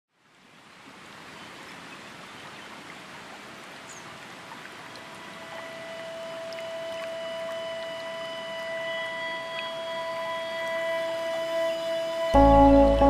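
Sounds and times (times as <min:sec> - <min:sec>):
steady tone with overtones: 0:05.1 - 0:13.0.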